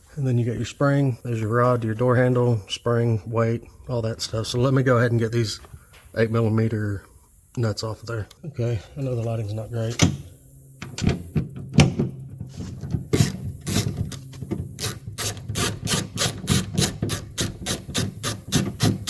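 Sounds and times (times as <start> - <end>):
ratchet wrench clicking: 13.1 - 19.0.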